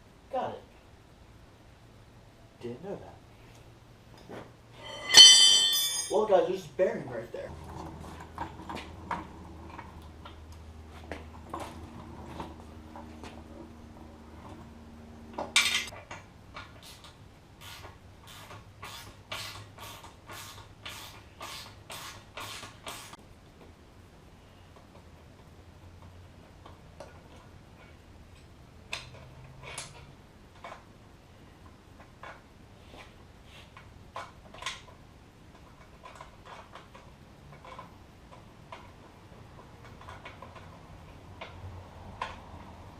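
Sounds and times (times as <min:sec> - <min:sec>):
sharp metallic clink: 0:04.8 - 0:06.4.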